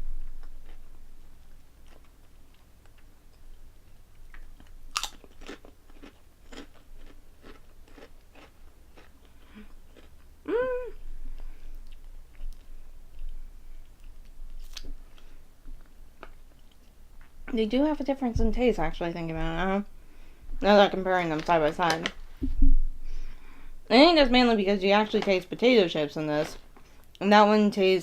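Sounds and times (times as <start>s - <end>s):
crunching potato chips: 4.3s - 10.2s, 11.8s - 15.3s
person humming: 10.5s - 11.1s.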